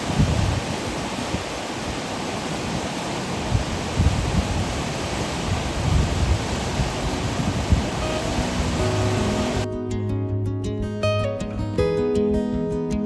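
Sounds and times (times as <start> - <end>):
steady rushing outdoor noise: 0.0 - 9.7
wind buffeting microphone: 0.0 - 9.7
faint guitar music: 7.7 - 13.0.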